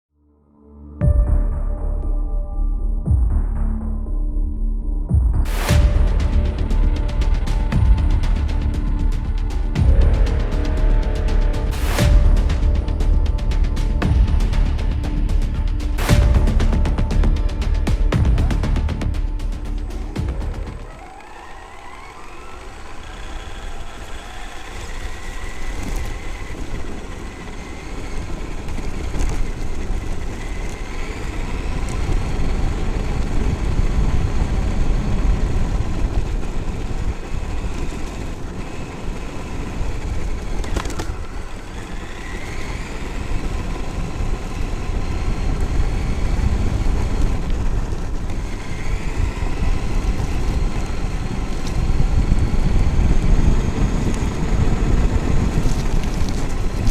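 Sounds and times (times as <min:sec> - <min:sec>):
rumble of wind and tyres: 0:00.9 - 0:56.9
electric motor whining: 0:05.6 - 0:56.9.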